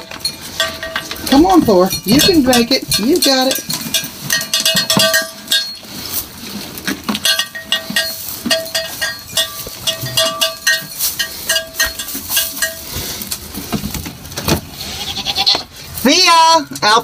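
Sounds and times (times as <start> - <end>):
small metal bell clinking: 0.0 - 5.9, 7.2 - 12.9.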